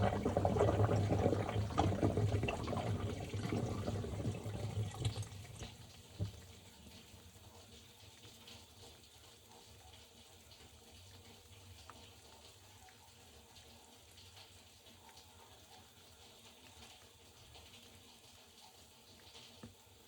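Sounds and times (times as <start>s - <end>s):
low steady hum: 0.0s - 8.3s
water swishing in washing machine: 0.0s - 20.0s.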